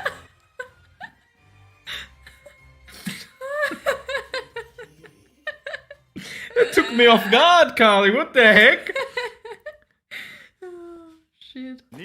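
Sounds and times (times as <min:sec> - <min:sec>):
person laughing: 0:01.9 - 0:07.6.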